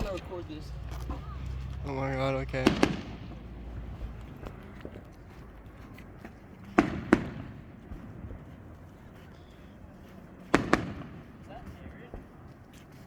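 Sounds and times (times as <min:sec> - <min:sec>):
fireworks bangs: 0:00.0 - 0:05.0, 0:06.6 - 0:08.4, 0:10.4 - 0:12.3.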